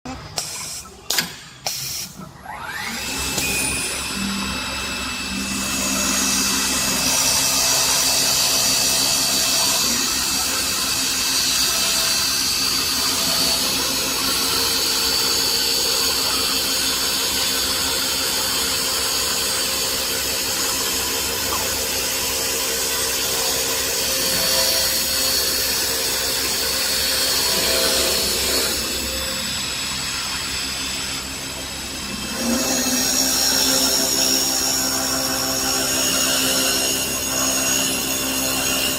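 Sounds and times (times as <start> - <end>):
high machine whine: 1.8 - 38.9
wood lathe cutting: 2.7 - 38.9.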